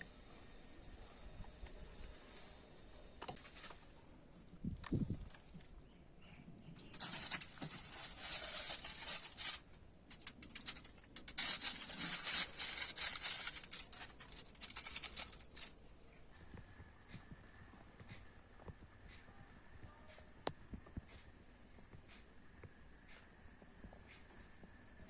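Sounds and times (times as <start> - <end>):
crackling and scraping clicks: 6.8 - 15.8.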